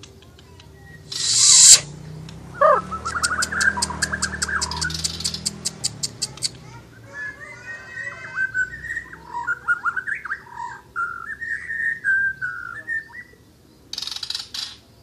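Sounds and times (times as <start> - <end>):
bird singing whistled phrases: 0.8 - 1.9, 2.5 - 5.5, 7.0 - 13.4
harsh rasping bird call: 1.1 - 1.9, 2.6 - 9.6.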